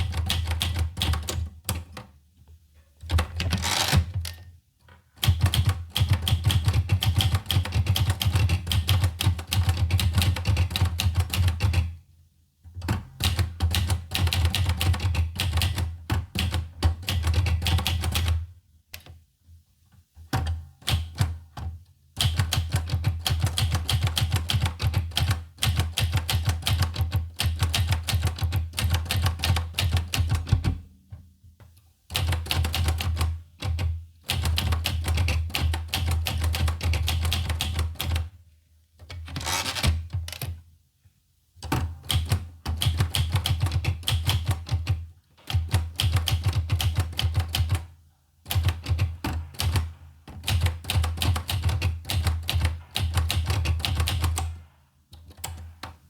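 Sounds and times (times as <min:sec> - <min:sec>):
manual typewriter typing: 0:00.0 - 0:02.1, 0:05.2 - 0:11.9, 0:12.8 - 0:18.4, 0:22.2 - 0:30.8, 0:32.1 - 0:38.3, 0:39.1 - 0:40.5, 0:41.7 - 0:47.9, 0:48.5 - 0:56.0.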